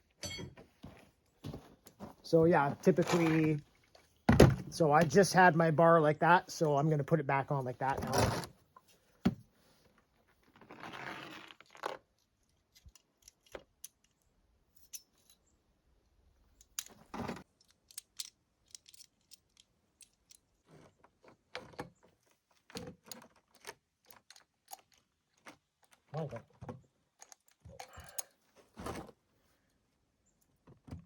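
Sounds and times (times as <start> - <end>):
light metal clinks: 0.2 - 0.6.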